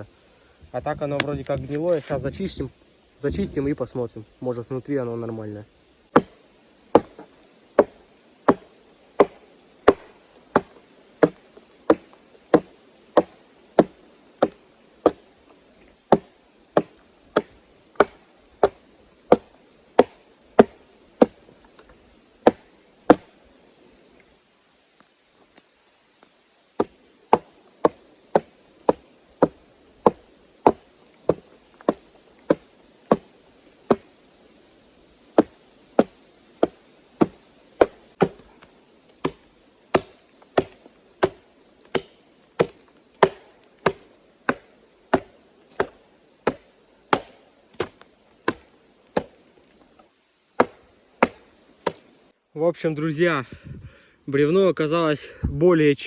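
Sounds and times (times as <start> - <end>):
axe chopping into log: 6.2 - 6.4, 7.0 - 15.3, 16.1 - 21.4, 22.4 - 23.3, 26.8 - 34.2, 35.4 - 49.7, 50.6 - 52.1.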